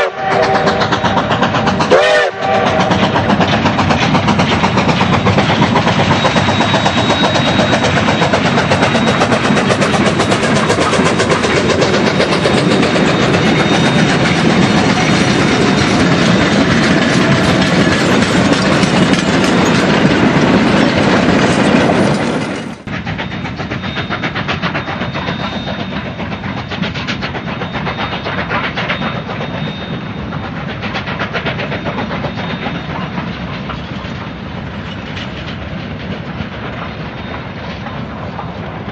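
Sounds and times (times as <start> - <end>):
rail clatter: 0.0 - 38.9
steam locomotive running: 0.0 - 38.9.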